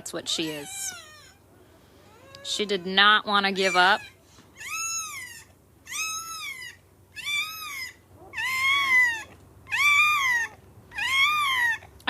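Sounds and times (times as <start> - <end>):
newborn puppy screaming: 0.2 - 1.4, 3.5 - 11.9.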